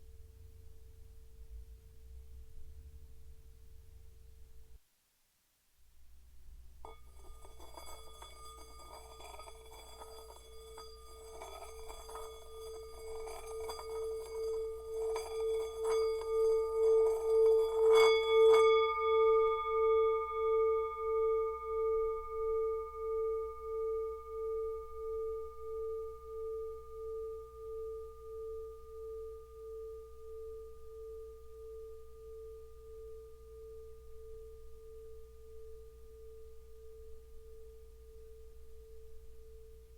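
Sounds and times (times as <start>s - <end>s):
singing bowl rim tone: 6.8s - 39.9s.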